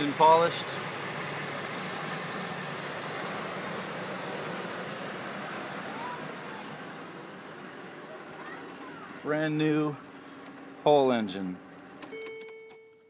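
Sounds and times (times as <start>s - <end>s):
hissing rush: 0.0s - 9.3s
car engine idling: 0.0s - 12.3s.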